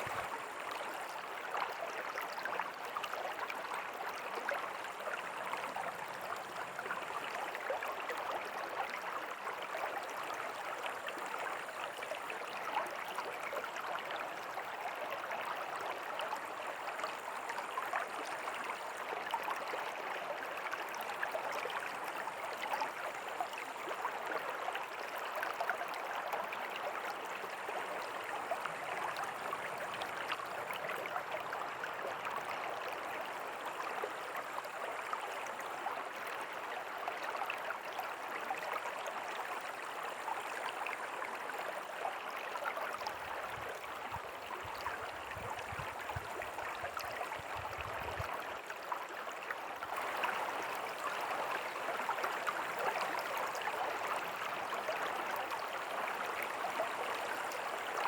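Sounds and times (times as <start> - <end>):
river water rushing: 0.0 - 0.6.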